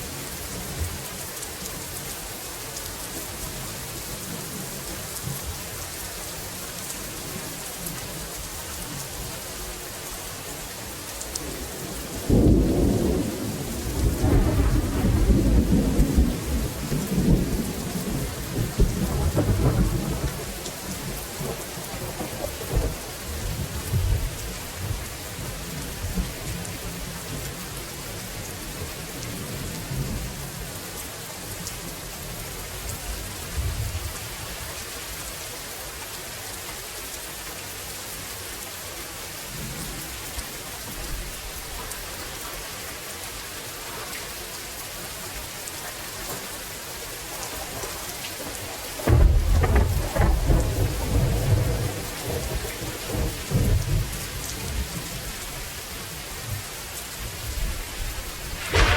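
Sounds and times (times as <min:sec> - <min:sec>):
steady rain falling: 0:00.0 - 0:58.9
thunder rumbling: 0:12.2 - 0:24.3, 0:47.8 - 0:54.9, 0:57.6 - 0:58.9.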